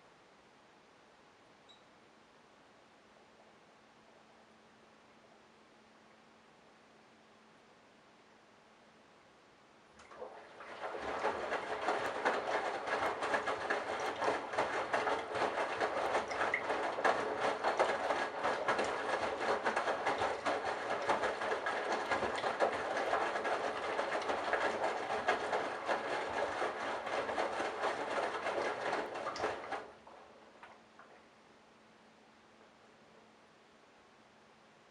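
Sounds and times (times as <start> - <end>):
washing machine rushing: 10.0 - 31.2.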